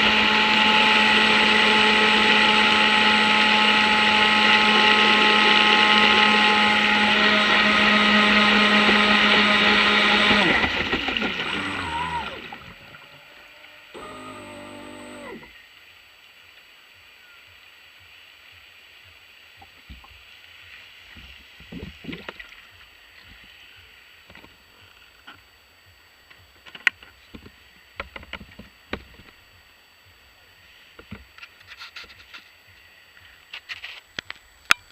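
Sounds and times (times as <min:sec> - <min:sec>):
electric motor whining: 0:00.0 - 0:15.7
small splashes and knocks: 0:21.1 - 0:23.3.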